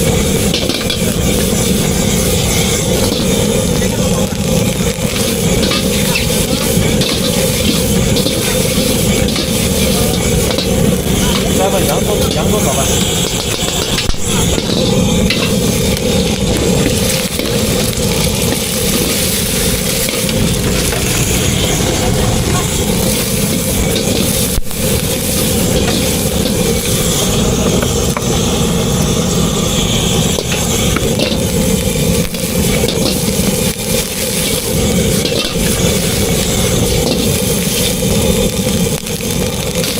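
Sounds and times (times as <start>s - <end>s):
low rumble: 0.0s - 39.6s
food sizzling in a pan: 0.0s - 39.9s
stirring scrape: 4.9s - 21.2s, 23.0s - 27.2s.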